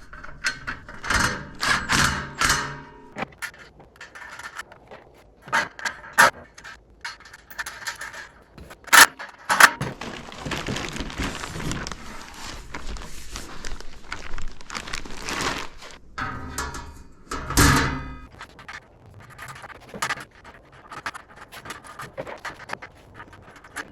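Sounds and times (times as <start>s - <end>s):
metal ringing: 0.0s - 4.6s, 16.1s - 18.3s
metal parts knocking: 0.0s - 11.9s, 16.0s - 23.9s
metal rattling and scraping: 0.0s - 23.9s.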